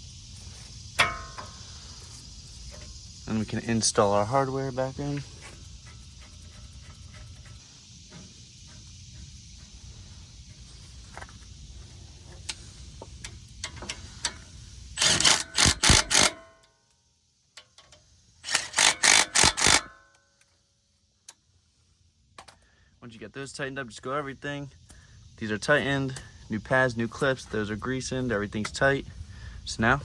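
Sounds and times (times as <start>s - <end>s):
impact wrench bursts: 0.9s - 4.4s, 13.6s - 16.7s, 18.4s - 20.0s.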